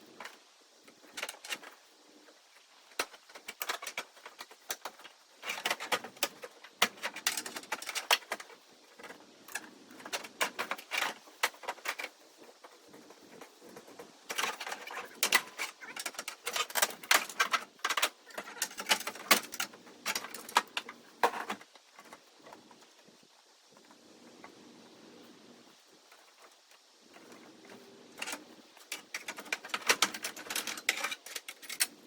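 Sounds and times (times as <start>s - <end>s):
hand tools clicking and clanking: 28.2s - 32.0s.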